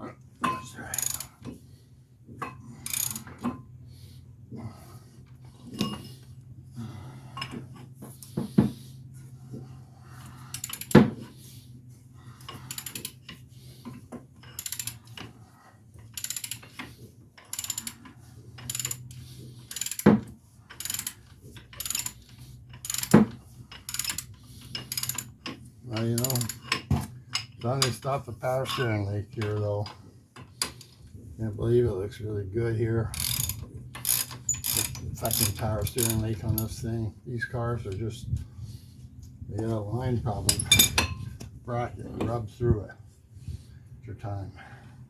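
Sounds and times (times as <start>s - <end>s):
steady low hum: 0.0s - 45.0s
hand ratchet clicking: 0.9s - 1.4s, 2.8s - 3.5s, 10.2s - 11.1s, 12.4s - 15.3s, 16.1s - 28.0s, 33.1s - 36.7s
metal tool clinks: 40.5s - 41.3s.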